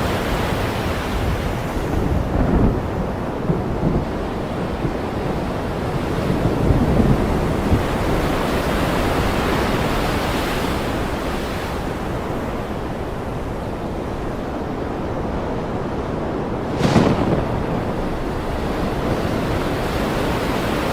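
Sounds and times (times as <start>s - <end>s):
low rumble of sea: 0.0s - 20.9s
wave hissing and washing back: 16.4s - 18.8s.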